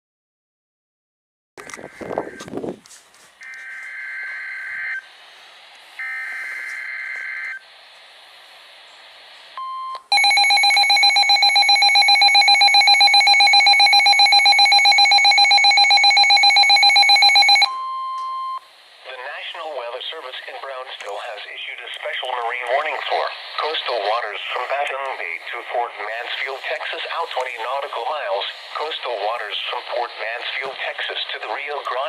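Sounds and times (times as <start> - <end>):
rapidly pulsing alarm beep: 6.0 - 7.6, 9.6 - 18.7.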